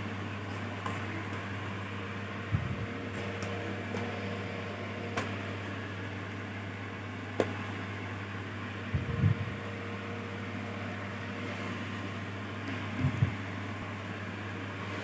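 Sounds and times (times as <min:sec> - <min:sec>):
low electrical hum: 0:00.0 - 0:15.0.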